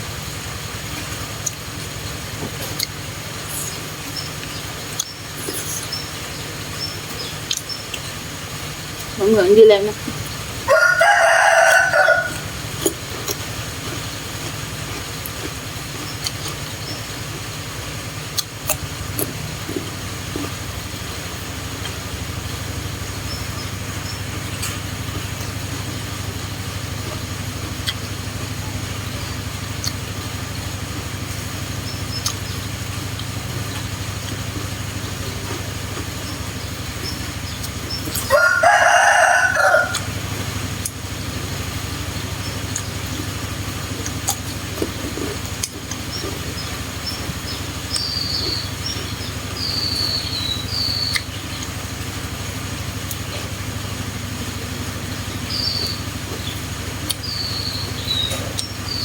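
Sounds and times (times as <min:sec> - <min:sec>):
steady low hum: 0:00.0 - 0:59.0
rooster crowing: 0:10.6 - 0:12.6, 0:38.1 - 0:40.2.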